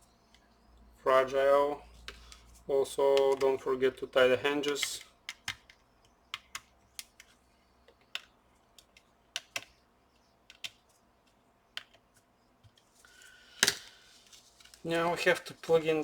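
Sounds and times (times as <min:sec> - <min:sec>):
small sharp clicks and taps: 0:04.6 - 0:12.9.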